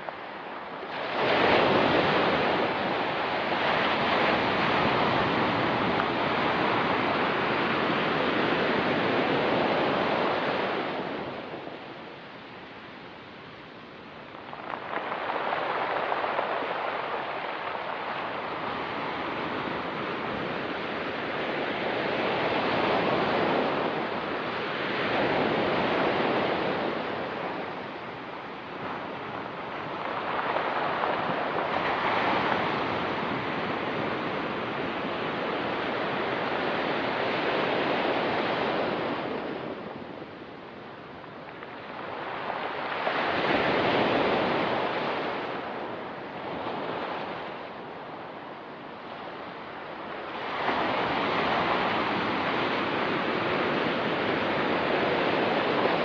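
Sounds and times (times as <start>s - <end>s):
surf breaking on rocky shore: 14.1s - 56.0s.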